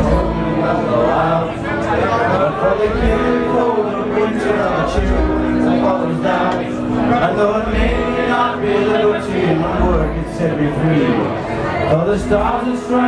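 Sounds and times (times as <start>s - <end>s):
man singing: 0.0s - 13.0s
live band music: 2.5s - 11.3s
low beat: 4.5s - 10.8s.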